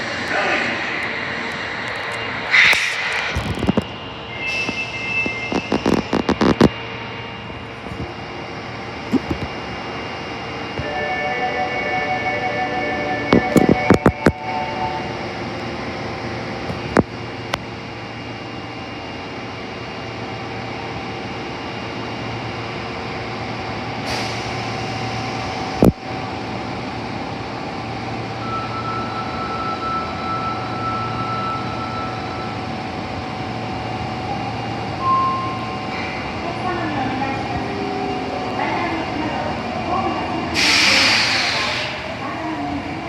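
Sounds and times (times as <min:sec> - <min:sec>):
subway car equipment hum: 0:00.0 - 0:43.0
short hiss of air: 0:02.5 - 0:03.5, 0:40.6 - 0:42.0.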